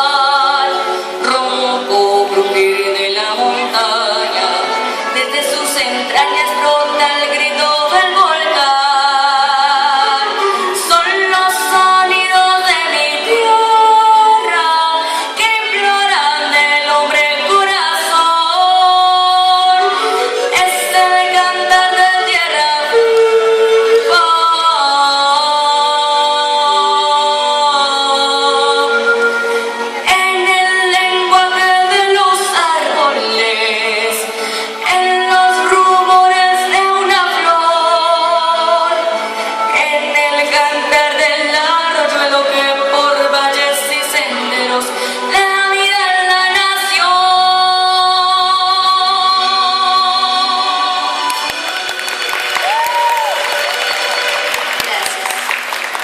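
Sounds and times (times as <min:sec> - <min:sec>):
backing music: 0:00.0 - 0:56.0.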